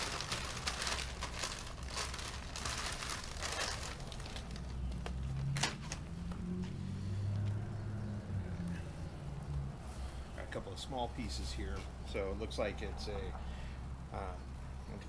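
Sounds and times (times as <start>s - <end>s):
plastic bags crinkling and rustling: 0.0s - 6.1s.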